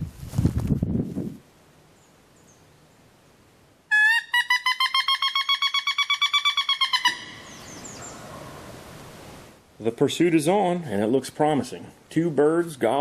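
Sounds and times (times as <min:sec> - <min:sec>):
woodpecker rattling call: 0:03.9 - 0:08.7.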